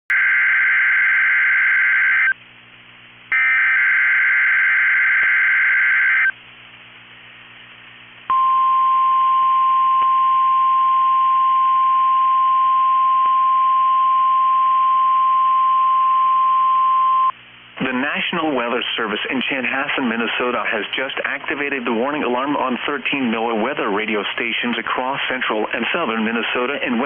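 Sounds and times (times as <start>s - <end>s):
warning alarm tone: 0.1s - 2.4s, 3.3s - 6.3s.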